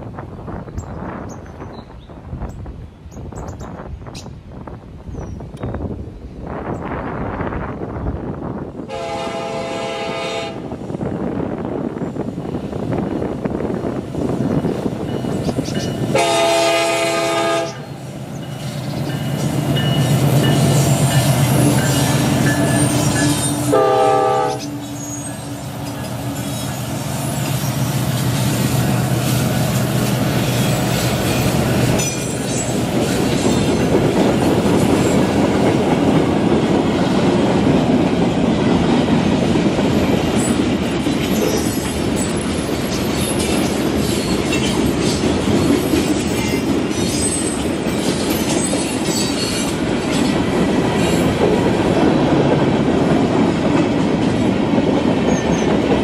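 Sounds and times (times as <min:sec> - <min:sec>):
train engine drone: 0:00.0 - 0:56.0
train air horn blasts: 0:08.9 - 0:10.8, 0:16.1 - 0:17.9, 0:22.8 - 0:25.2
train wheels clattering on rail: 0:11.7 - 0:56.0.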